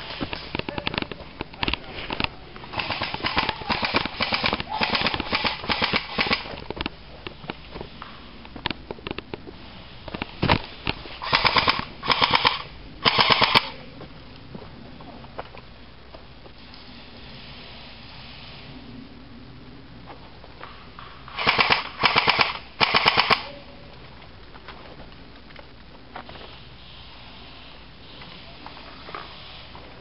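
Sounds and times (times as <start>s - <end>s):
airsoft guns firing bursts: 2.7s - 6.5s, 11.2s - 13.7s, 21.3s - 23.5s.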